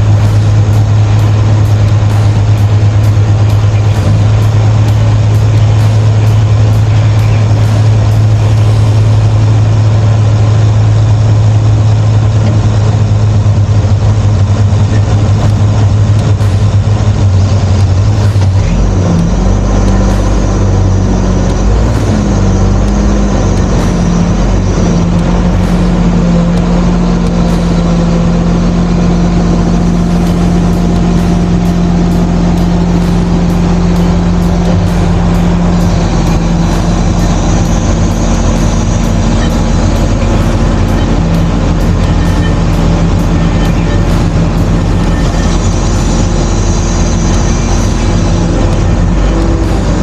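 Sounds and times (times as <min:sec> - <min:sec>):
diesel engine running: 0:00.0 - 0:50.0.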